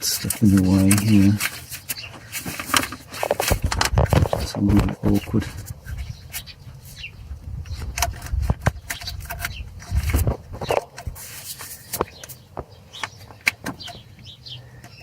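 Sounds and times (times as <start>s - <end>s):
clicks and scrapes of clip: 7.7s - 12.4s.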